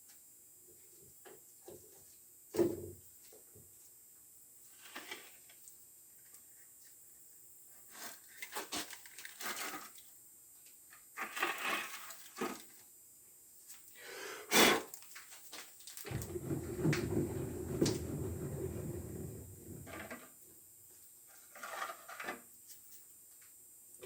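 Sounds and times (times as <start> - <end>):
steady low running noise: 16.1 - 20.1.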